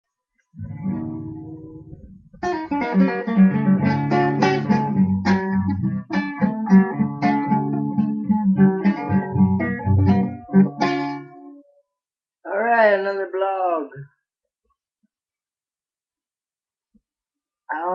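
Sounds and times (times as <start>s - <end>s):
guitar chords and plucked notes: 0.6s - 11.6s.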